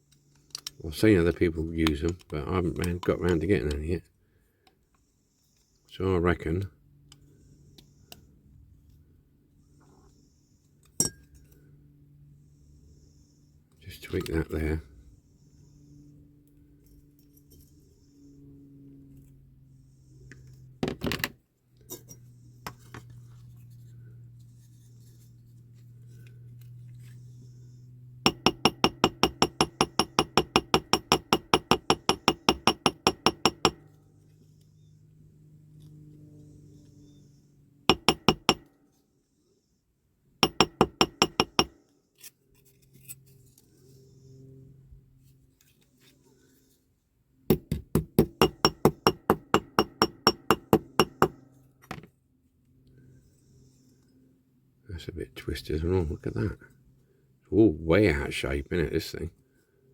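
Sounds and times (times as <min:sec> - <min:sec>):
hammer tapping on metal: 0:28.3 - 0:33.8, 0:37.9 - 0:38.7, 0:40.4 - 0:41.7, 0:47.5 - 0:52.1.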